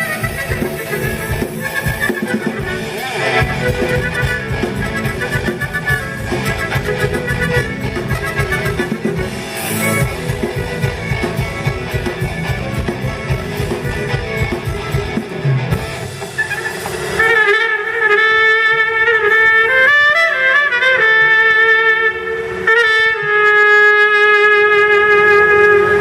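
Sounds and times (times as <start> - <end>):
melody instruments: 0.0 - 17.6
strummed rhythm accompaniment: 0.0 - 26.0.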